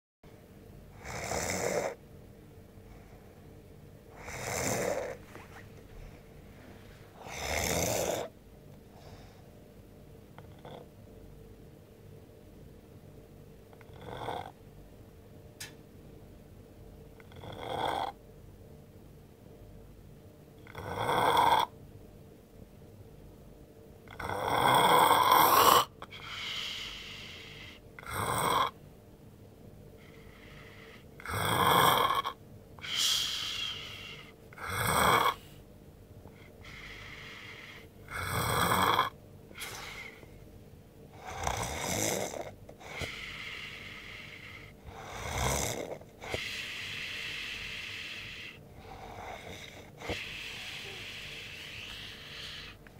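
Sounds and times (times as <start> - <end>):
man snoring: 1.0 - 2.0, 4.1 - 5.2, 7.2 - 8.4, 13.8 - 14.6, 17.2 - 18.2, 20.6 - 21.7, 24.1 - 28.8, 30.5 - 35.4, 36.6 - 40.2, 41.1 - 52.8
quiet breathing: 2.7 - 9.7, 25.8 - 28.1, 29.9 - 31.3, 32.1 - 38.2, 39.5 - 40.5, 41.1 - 52.9.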